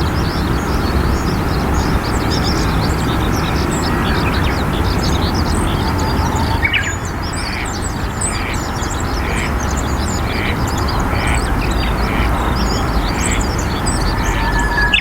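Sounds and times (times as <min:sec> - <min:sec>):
small birds chirping: 0:00.0 - 0:15.0
steady low rumble: 0:00.0 - 0:15.0.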